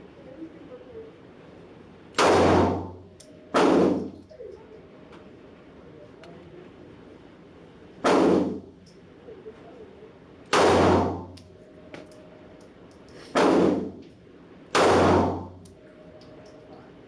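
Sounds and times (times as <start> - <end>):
pistol shots: 2.2 - 2.9, 3.6 - 4.1, 8.0 - 8.6, 10.5 - 11.3, 13.4 - 13.9, 14.7 - 15.6.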